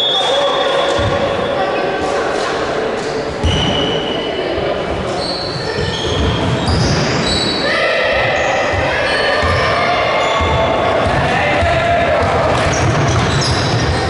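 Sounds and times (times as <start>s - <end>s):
murmur of voices: 0.0s - 14.0s
sneakers squeaking on hardwood: 5.1s - 7.6s, 12.6s - 14.0s.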